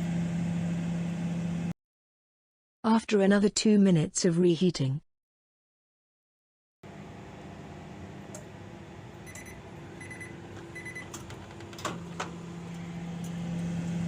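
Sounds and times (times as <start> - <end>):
microwave oven humming: 0.0 - 1.8, 6.8 - 14.0.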